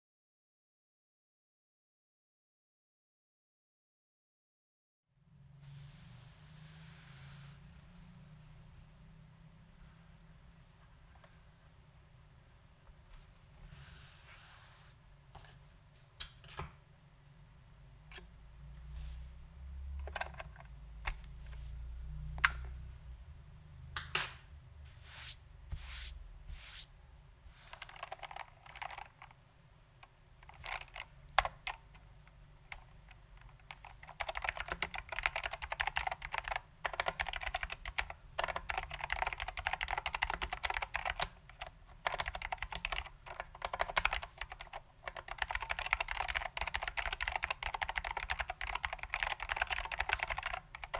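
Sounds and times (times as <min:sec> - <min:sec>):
mechanical keyboard typing: 0:20.0 - 0:21.2, 0:27.8 - 0:29.4, 0:30.4 - 0:50.9.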